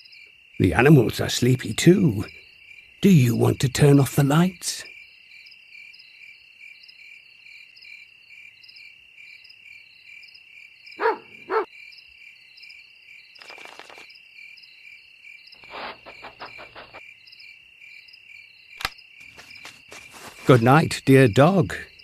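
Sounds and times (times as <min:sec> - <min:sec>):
crickets chirping: 0:00.0 - 0:22.0
puppy calling: 0:11.0 - 0:11.7.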